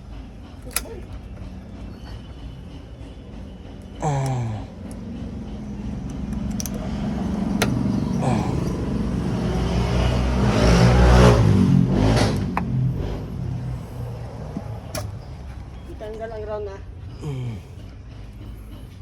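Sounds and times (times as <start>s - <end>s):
vehicle engine running: 0.0s - 19.0s
sharp metallic clicks: 6.0s - 8.0s.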